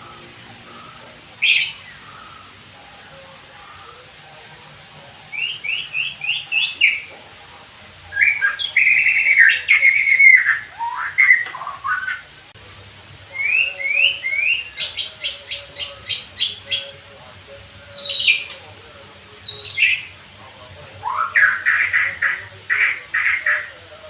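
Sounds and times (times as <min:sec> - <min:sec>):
bird singing whistles and warbles: 0:00.0 - 0:04.2, 0:05.3 - 0:07.1, 0:08.1 - 0:12.4, 0:13.3 - 0:17.0, 0:17.8 - 0:18.7, 0:19.4 - 0:20.2, 0:21.0 - 0:23.8.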